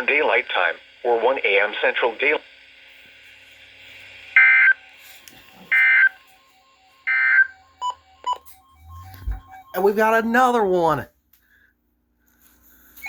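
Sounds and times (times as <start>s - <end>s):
warbling digital data tones: 3.8s - 11.1s.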